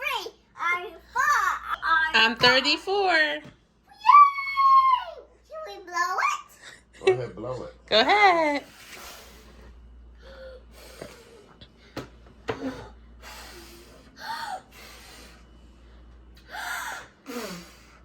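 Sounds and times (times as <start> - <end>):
children blowing at candle: 12.7 - 15.4, 17.2 - 18.0.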